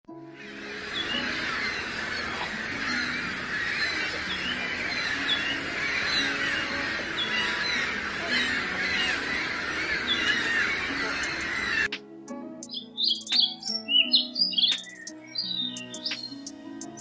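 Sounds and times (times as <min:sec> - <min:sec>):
flock of birds honking: 0:00.2 - 0:12.0.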